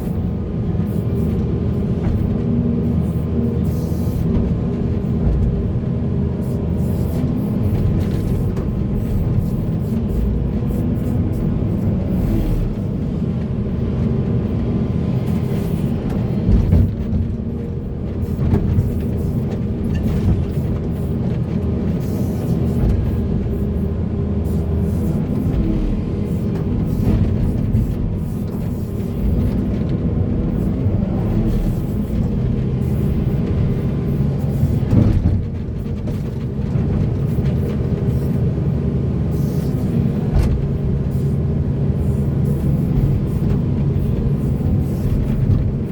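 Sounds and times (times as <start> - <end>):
heavy diesel machinery running: 0.0 - 45.9.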